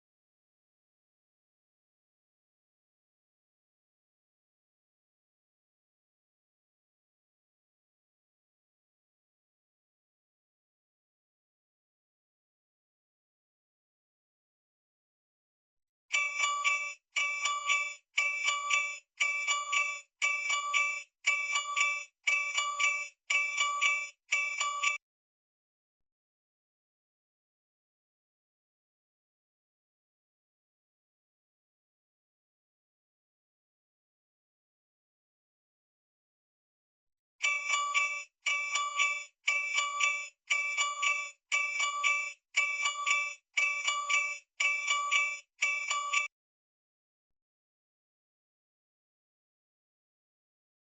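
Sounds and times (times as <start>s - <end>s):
alarm clock ringing: 16.1s - 25.0s, 37.4s - 46.3s.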